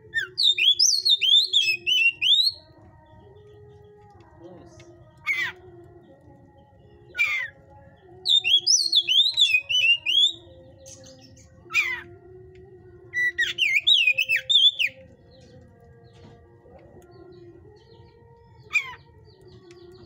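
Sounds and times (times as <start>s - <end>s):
sharp downward bird calls: 0.2s - 2.6s
bird warbling: 5.2s - 5.6s.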